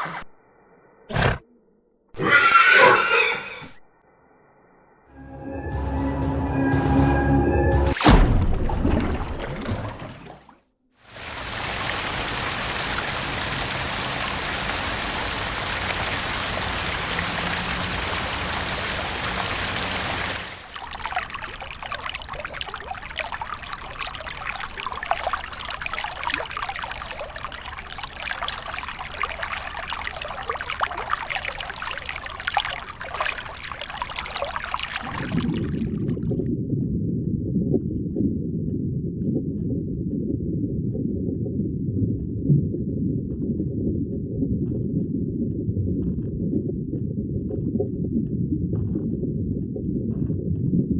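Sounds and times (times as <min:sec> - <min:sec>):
water trickling and splashing: 0:08.8 - 0:36.4
water running: 0:11.1 - 0:36.2.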